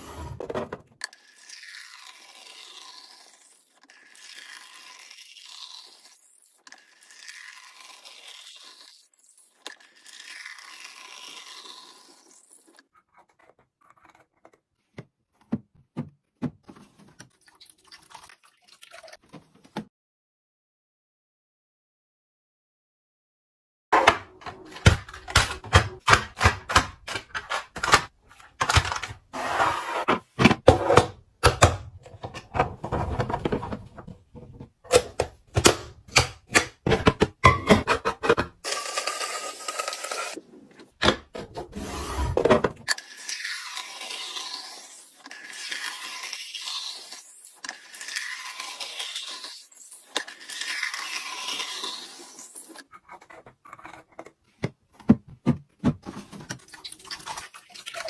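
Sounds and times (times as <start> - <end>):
food containers clicking and knocking: 24.0 - 29.3, 30.1 - 38.6.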